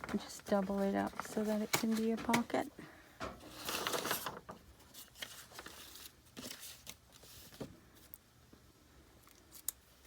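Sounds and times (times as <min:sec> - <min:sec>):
paper page rustling: 0:03.4 - 0:07.7.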